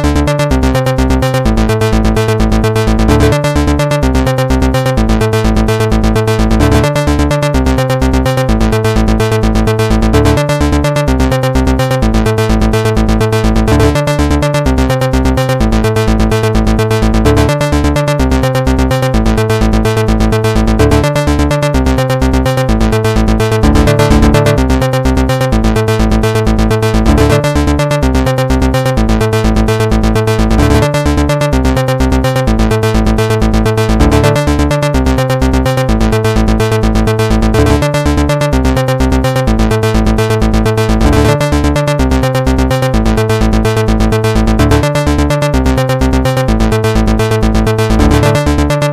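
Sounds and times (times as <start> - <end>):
electronic dance music: 0.0 - 48.9.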